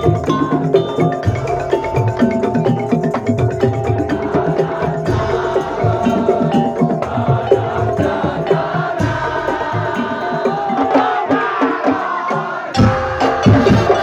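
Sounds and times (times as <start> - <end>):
fast dense percussion: 0.0 - 14.0.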